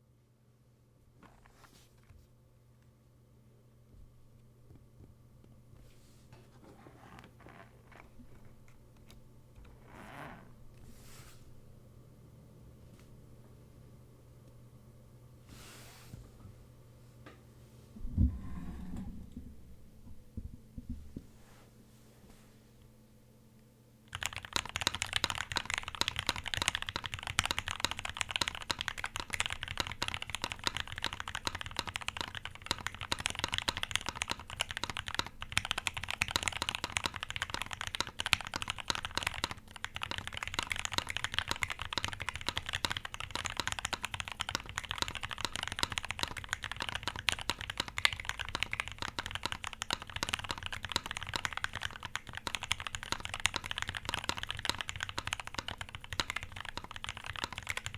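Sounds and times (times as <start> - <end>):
fast typing on mechanical keyboard: 24.1 - 57.9.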